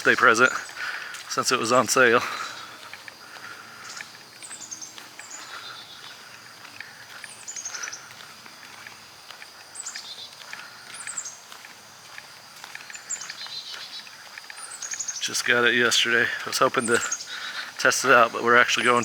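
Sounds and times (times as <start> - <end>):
songbird singing: 0.0 - 19.0.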